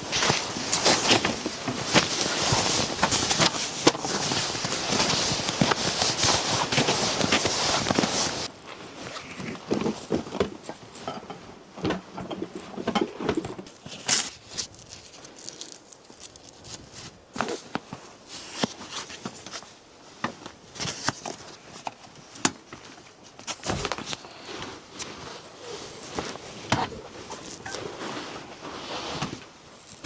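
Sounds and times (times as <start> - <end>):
rustling: 0.0 - 30.0.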